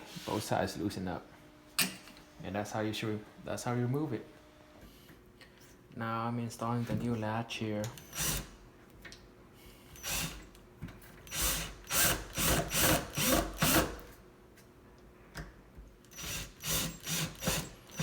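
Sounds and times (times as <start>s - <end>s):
power drill driving screws: 10.0s - 10.4s, 11.3s - 14.0s, 16.1s - 18.0s.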